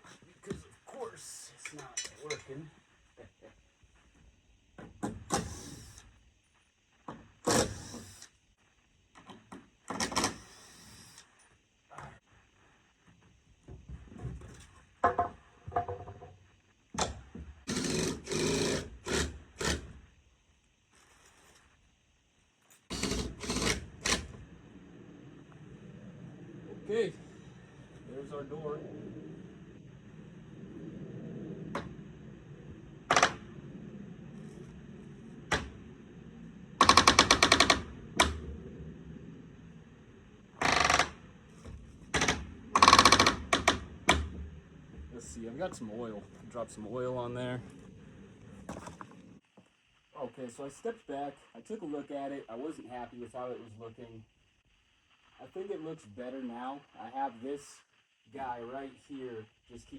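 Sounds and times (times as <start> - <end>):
knocks and rattles: 13.8 - 16.4, 36.8 - 38.6, 40.6 - 45.2
door knocking: 15.0 - 16.3
power drill running: 17.7 - 19.8, 22.9 - 24.4, 40.6 - 41.2
metal door hinges creaking: 33.1 - 33.5, 36.8 - 38.5, 40.6 - 45.2.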